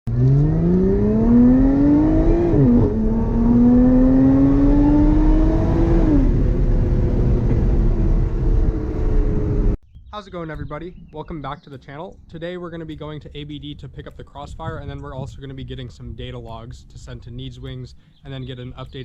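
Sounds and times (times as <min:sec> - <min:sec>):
car engine accelerating: 0:00.1 - 0:09.8.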